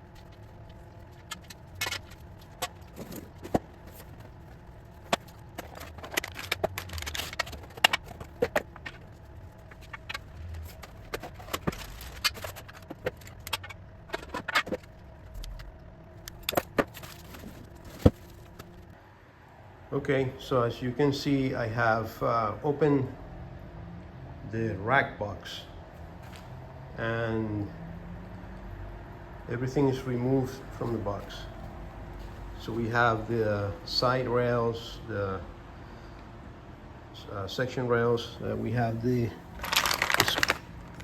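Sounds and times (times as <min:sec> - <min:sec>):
packaging rustling: 0:00.0 - 0:15.0, 0:16.2 - 0:18.9, 0:39.4 - 0:41.0.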